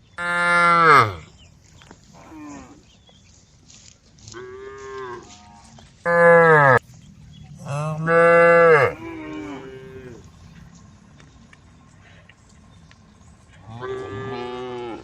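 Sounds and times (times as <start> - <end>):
cows mooing: 0.2 - 1.3, 4.4 - 6.8, 7.6 - 10.3, 13.6 - 15.0.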